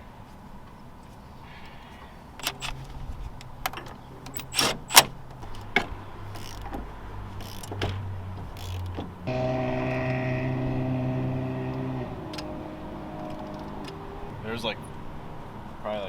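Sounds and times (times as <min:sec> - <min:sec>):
metallic clanks of hand tools: 0:02.4 - 0:02.9, 0:03.7 - 0:05.1
low steady hum: 0:09.2 - 0:15.6.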